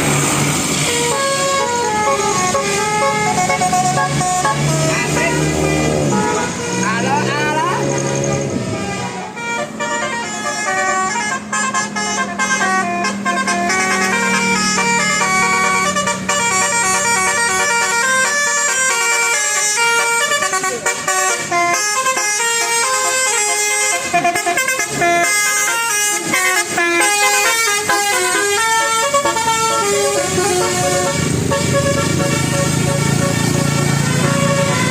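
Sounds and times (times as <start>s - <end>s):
musical air horn playing a tune: 0.8s - 34.9s.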